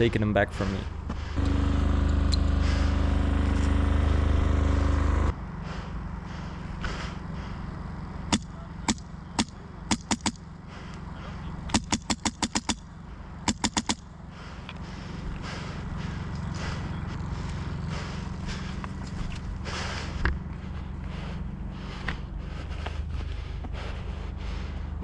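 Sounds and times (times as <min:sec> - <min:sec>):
loud low hum: 0:00.0 - 0:09.9
airsoft rifle shots: 0:08.3 - 0:10.4, 0:11.7 - 0:12.8, 0:13.5 - 0:14.0.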